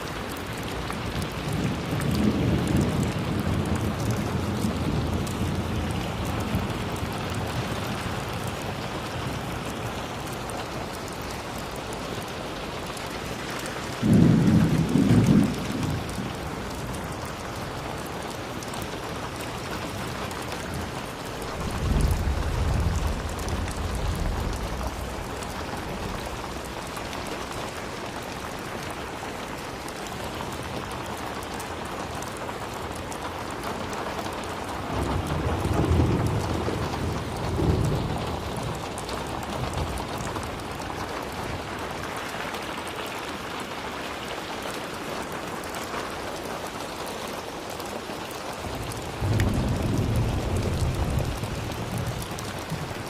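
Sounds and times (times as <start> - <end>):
steady rain falling: 0.0 - 53.0
thunder crack: 14.0 - 16.4, 21.4 - 27.8
deep thunder rumble: 14.0 - 17.4, 21.2 - 29.9, 34.9 - 40.6, 48.8 - 53.0.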